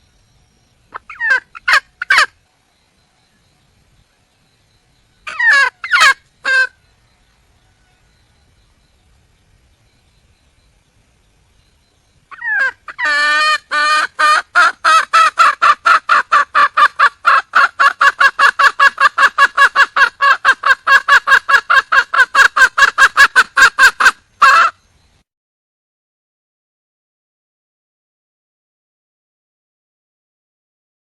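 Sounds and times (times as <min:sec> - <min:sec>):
hen clucking: 0:00.9 - 0:02.4, 0:05.3 - 0:06.8, 0:12.3 - 0:24.8.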